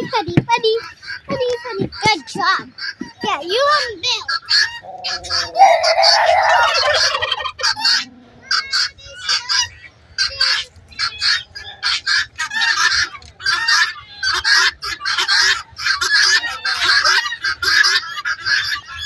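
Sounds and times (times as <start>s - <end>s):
poultry calling: 4.3s - 19.0s.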